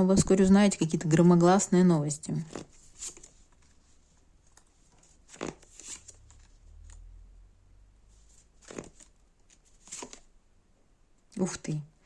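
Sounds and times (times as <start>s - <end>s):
cards rustling and tapping: 2.4s - 3.9s, 4.5s - 6.9s, 8.2s - 10.3s.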